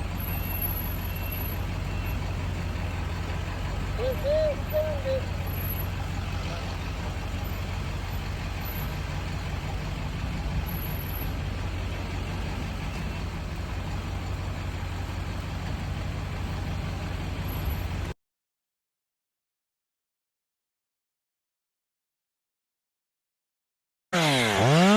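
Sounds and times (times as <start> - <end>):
large engine humming: 0.0 - 18.2.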